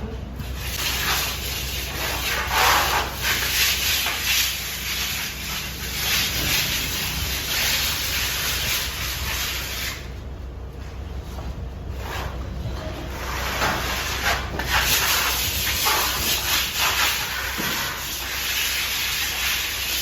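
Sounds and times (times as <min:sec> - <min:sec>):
trowel scraping plaster on wall: 0:00.5 - 0:10.1, 0:13.0 - 0:20.0.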